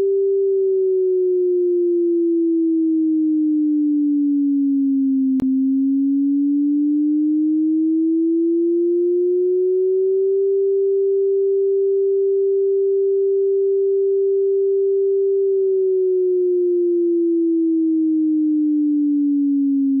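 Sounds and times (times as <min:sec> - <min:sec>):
synthesized siren wail: 0:00.7 - 0:10.5, 0:15.6 - 0:20.0.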